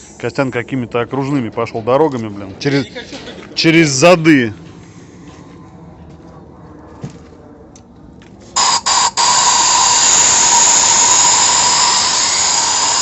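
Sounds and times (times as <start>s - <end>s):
air hissing with whistle: 0.0s - 0.3s, 8.6s - 13.0s
compressed air blasts: 8.6s - 13.0s.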